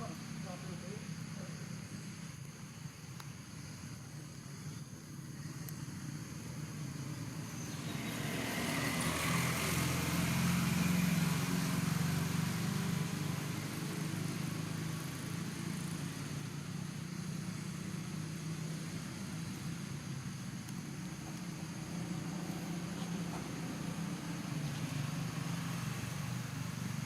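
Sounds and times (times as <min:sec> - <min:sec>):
vehicle engine passing by: 0:05.5 - 0:27.0.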